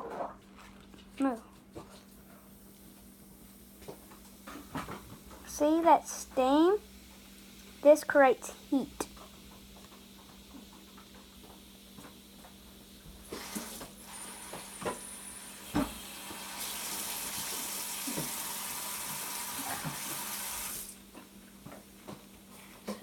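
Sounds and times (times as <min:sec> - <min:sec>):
water running from a tap: 0:04.4 - 0:21.0.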